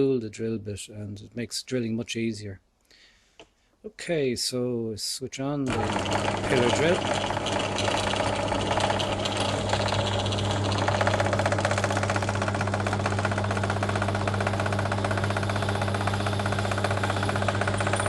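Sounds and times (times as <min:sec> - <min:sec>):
drill motor humming: 0:05.7 - 0:18.0.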